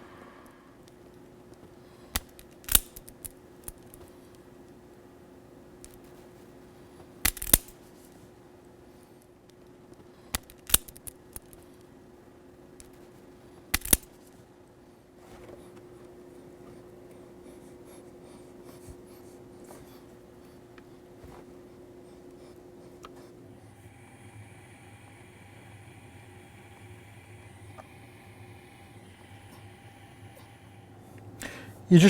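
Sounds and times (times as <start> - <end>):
faint rustling of handling: 15.1 - 23.4.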